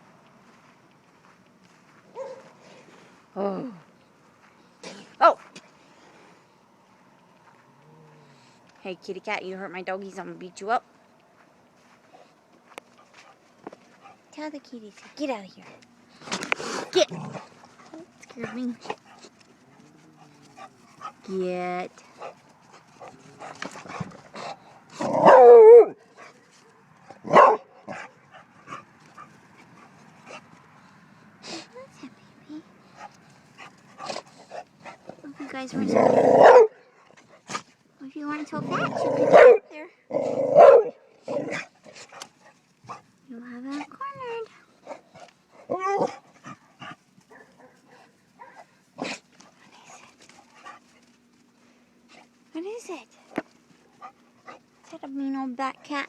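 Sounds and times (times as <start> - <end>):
faint ticks and scuffs: 0.0 - 25.0, 26.0 - 27.2, 27.9 - 35.7, 41.5 - 56.0
dog barking: 2.2 - 2.5, 27.3 - 28.2, 36.4 - 36.8, 39.3 - 39.7, 40.6 - 41.0, 47.3 - 48.7.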